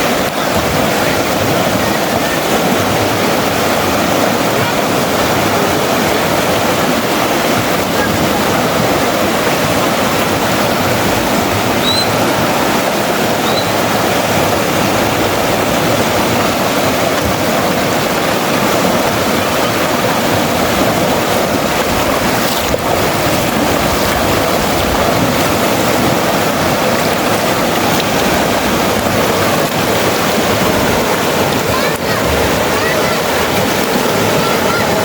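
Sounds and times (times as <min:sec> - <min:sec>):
river water rushing: 0:00.0 - 0:35.0
high chirps: 0:11.8 - 0:12.2, 0:13.4 - 0:13.7.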